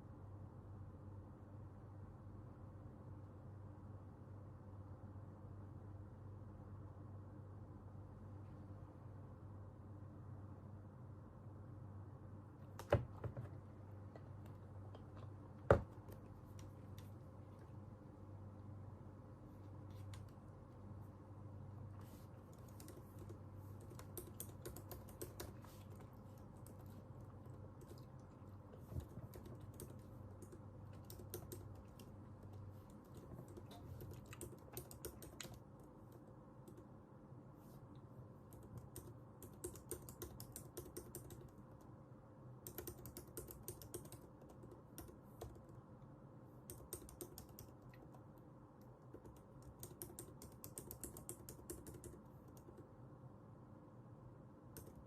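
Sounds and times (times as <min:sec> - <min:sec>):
keyboard typing clicks: 0:22.5 - 0:36.9, 0:38.5 - 0:41.9, 0:42.6 - 0:45.8, 0:46.7 - 0:52.9, 0:54.7 - 0:55.0.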